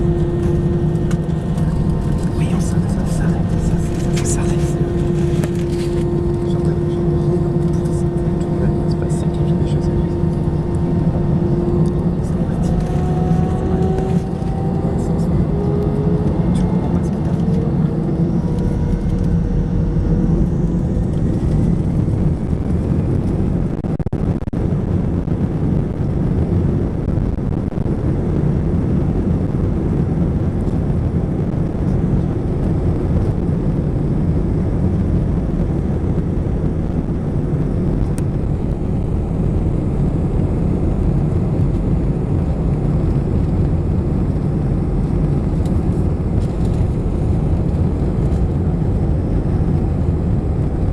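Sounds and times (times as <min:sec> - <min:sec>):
airplane cabin rumble: 0:00.0 - 0:50.9.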